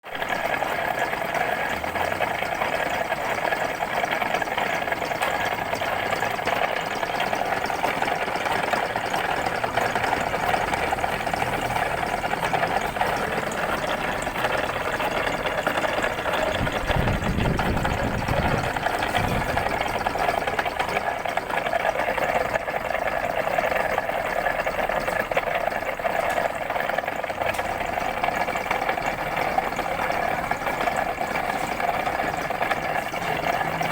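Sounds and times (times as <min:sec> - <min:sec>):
machine tool whirring: 0:00.1 - 0:33.9.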